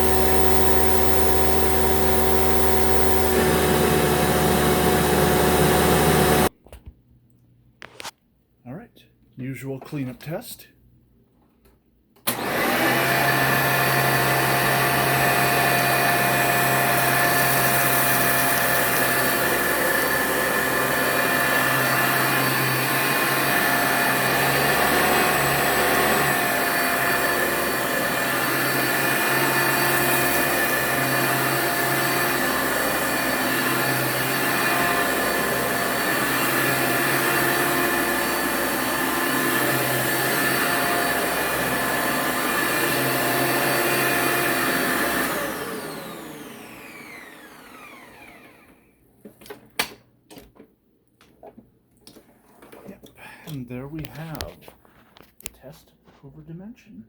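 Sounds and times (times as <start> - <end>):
upright vacuum cleaner running: 0.0 - 6.5, 12.3 - 48.9.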